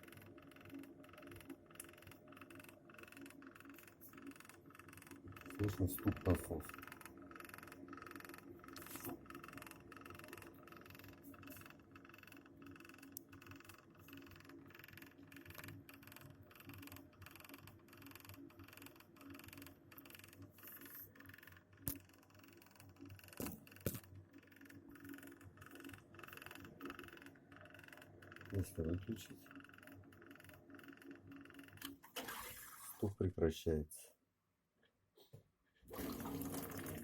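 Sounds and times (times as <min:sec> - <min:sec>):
pump hum: 0:35.9 - 0:37.0.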